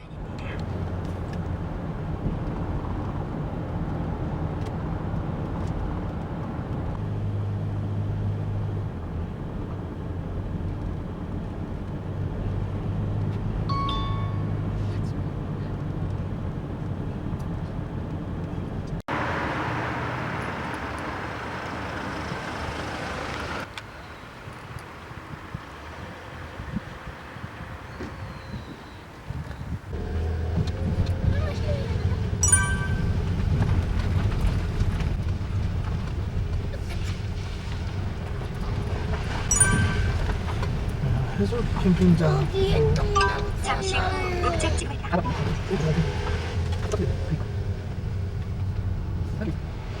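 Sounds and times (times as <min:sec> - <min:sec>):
car engine and road noise: 0:00.0 - 0:50.0
short electronic chime: 0:13.7 - 0:14.7, 0:32.4 - 0:33.3, 0:39.5 - 0:40.5.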